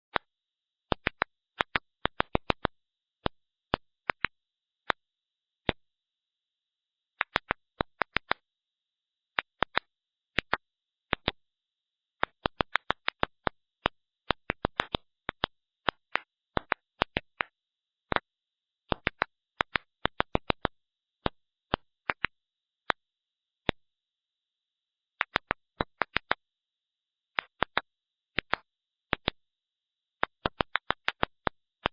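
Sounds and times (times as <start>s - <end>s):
sharp irregular pops: 0.9s - 5.0s, 7.2s - 8.5s, 9.4s - 11.4s, 12.2s - 18.3s, 18.9s - 23.0s, 25.2s - 26.4s, 27.3s - 29.4s, 30.2s - 31.9s.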